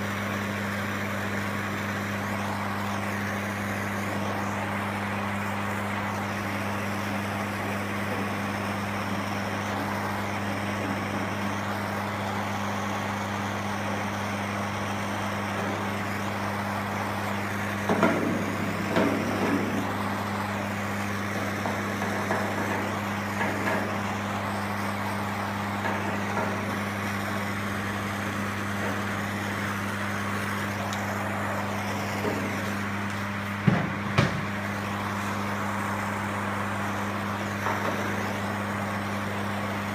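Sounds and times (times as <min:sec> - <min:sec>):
machine drone with hum: 0:00.0 - 0:39.9
sharp knocks: 0:33.6 - 0:34.6.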